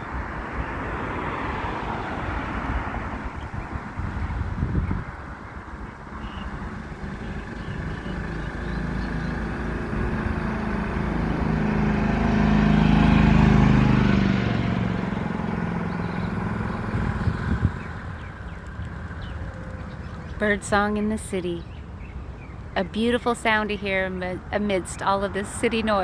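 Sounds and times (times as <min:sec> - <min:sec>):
vehicle engine passing by: 0:00.0 - 0:20.6.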